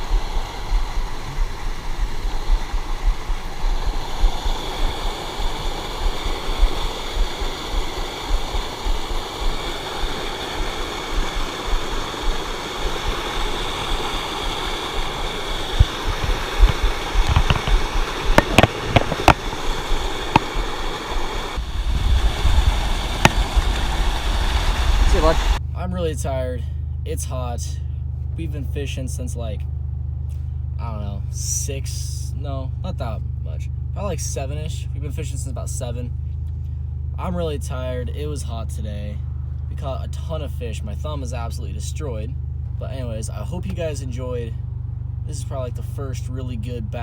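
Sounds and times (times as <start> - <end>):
steady rushing noise: 0.0 - 25.6
sharp clicks: 15.0 - 21.6.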